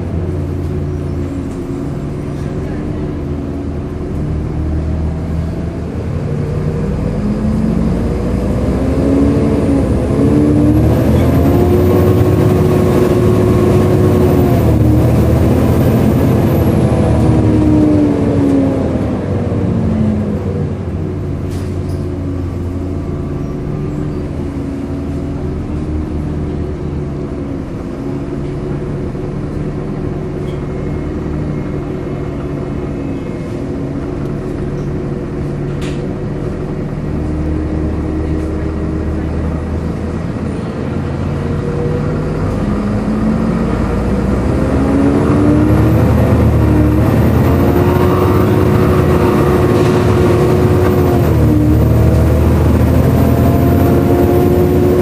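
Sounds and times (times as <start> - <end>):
bus diesel engine: 0.0 - 55.0
cooling fan drone: 39.2 - 55.0.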